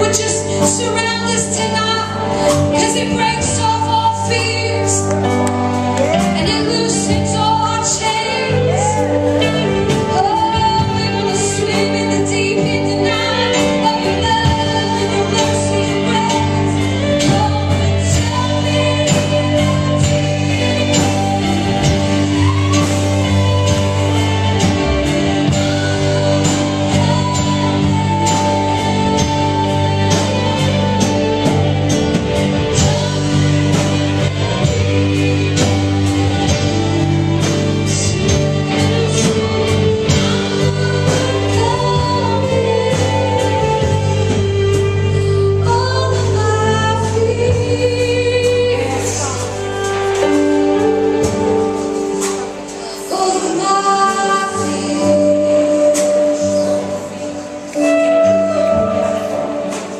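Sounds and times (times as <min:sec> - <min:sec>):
band with drums and cymbals: 0:00.0 - 0:59.9
people singing: 0:05.7 - 0:49.7.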